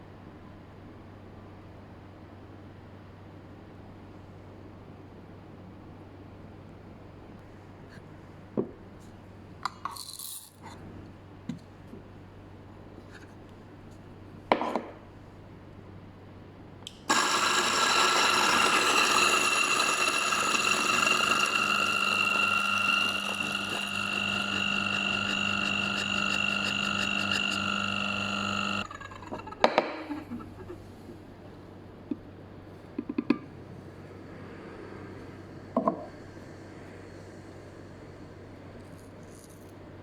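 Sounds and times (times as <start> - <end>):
coffee grinder grinding beans: 10.0 - 10.6, 17.1 - 30.7.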